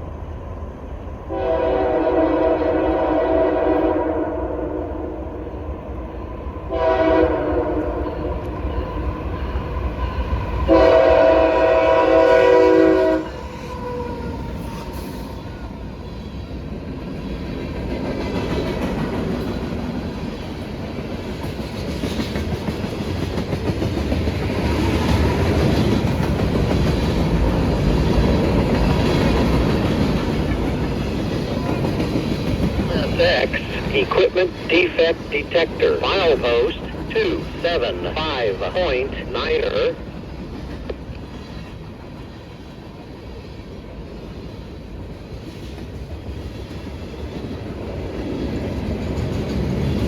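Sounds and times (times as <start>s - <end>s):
freight train rumbling past: 0.0s - 50.0s
locomotive air horn: 1.3s - 5.1s, 6.7s - 8.4s, 10.7s - 13.4s
train wheels clickety-clack: 13.3s - 34.7s, 40.0s - 50.0s.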